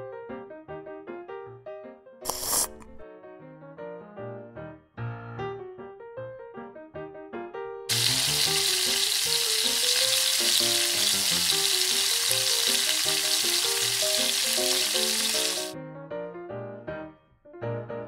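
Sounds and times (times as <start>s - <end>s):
light piano music: 0.0s - 2.2s, 3.0s - 18.0s
food sizzling in a frying pan: 7.9s - 15.8s.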